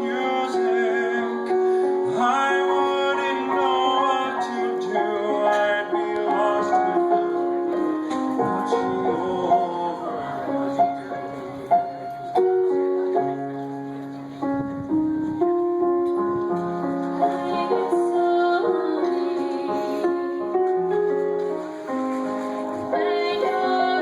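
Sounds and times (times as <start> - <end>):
slow piano song: 0.0 - 24.0.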